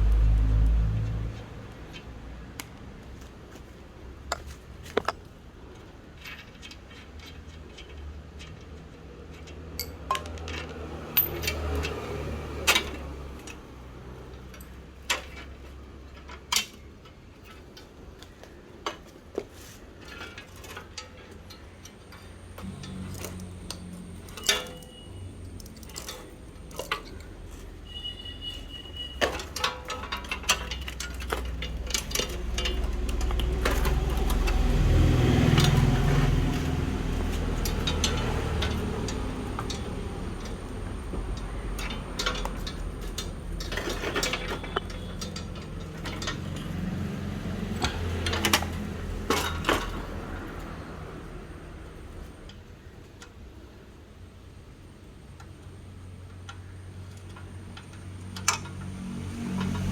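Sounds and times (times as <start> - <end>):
high metallic ring: 22.6 - 25.4, 27.8 - 29.3
metal tool clinks and taps: 37.6 - 46.8.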